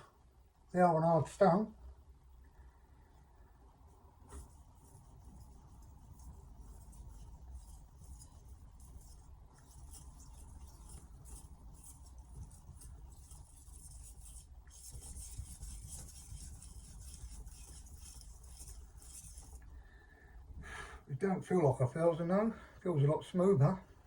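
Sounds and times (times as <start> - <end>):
knife scraping on whetstone: 5.4 - 19.6.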